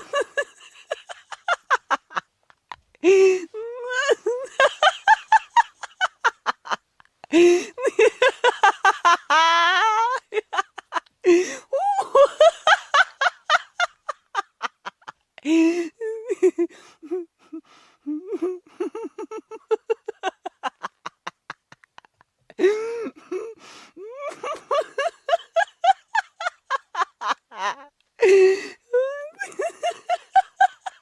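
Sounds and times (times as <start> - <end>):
hearty human laughter: 0.0 - 31.0
sharp breathy in-breaths: 23.6 - 24.0.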